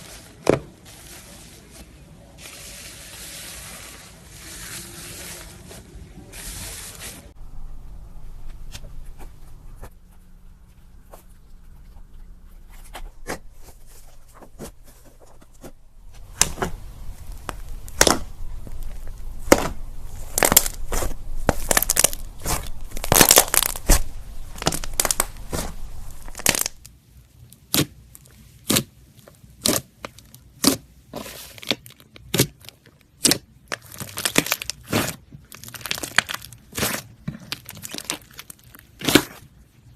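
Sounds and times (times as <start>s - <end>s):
slime crackling and popping: 15.6s - 26.9s, 27.5s - 28.9s, 29.5s - 30.8s, 31.4s - 39.4s.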